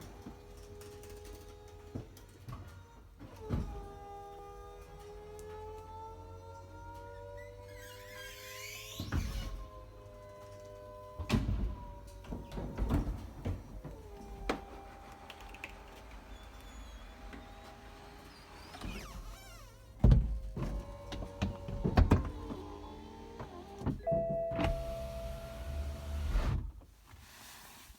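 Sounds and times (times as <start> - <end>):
power roof drive running: 12.3 - 26.6
roof mechanism squeaking: 12.4 - 26.6.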